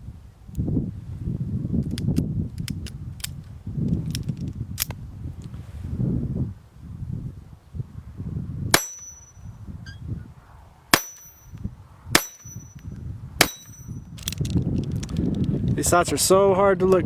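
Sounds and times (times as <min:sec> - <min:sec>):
low wind rumble: 0:00.0 - 0:17.0
rifle gunshots: 0:08.8 - 0:09.1, 0:12.2 - 0:12.5.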